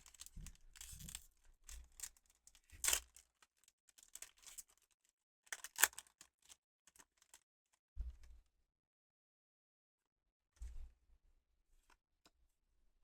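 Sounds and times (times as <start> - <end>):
foil wrapper and cards crinkling: 0.0 - 1.2, 1.8 - 7.4.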